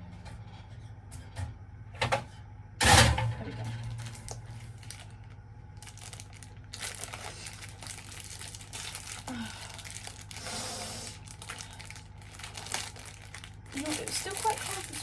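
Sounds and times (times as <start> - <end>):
low steady hum: 0.0 - 15.0
crinkling and rustling: 3.5 - 15.0.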